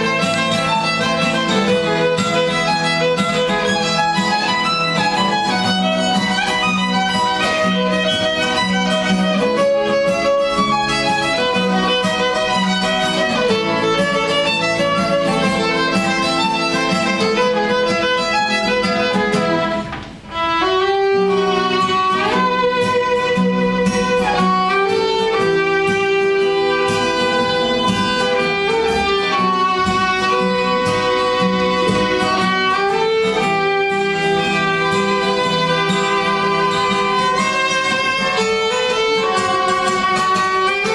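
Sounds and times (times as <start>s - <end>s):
musical accompaniment: 0.0s - 40.9s
solo violin melody: 0.0s - 40.9s.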